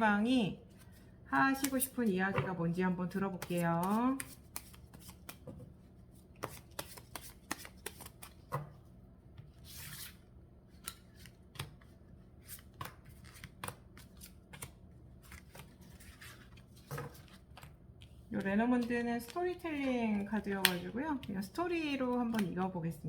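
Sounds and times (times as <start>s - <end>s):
cards shuffling snaps and clicks: 1.6s - 2.0s, 3.3s - 5.5s, 6.4s - 8.6s, 10.1s - 19.4s, 20.1s - 21.4s.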